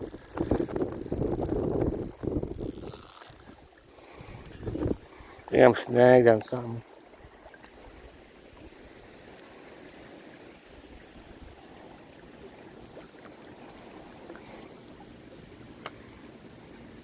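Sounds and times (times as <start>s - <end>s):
wind and water hiss: 0.0s - 17.0s
light ticks: 15.8s - 16.0s.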